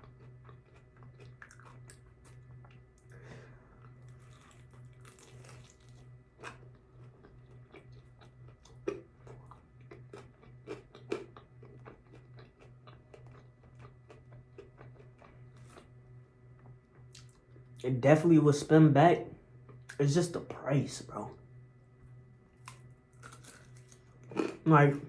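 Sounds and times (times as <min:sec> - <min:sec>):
person chewing food: 0:00.0 - 0:17.8, 0:22.6 - 0:24.6
low steady hum: 0:00.0 - 0:25.0.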